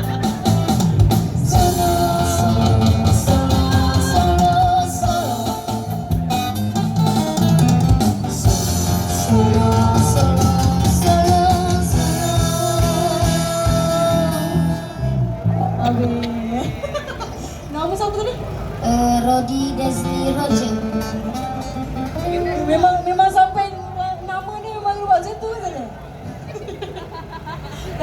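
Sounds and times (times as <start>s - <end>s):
guitar accompaniment: 0.0s - 17.7s, 18.8s - 24.7s
person singing: 1.4s - 6.1s, 8.4s - 15.1s.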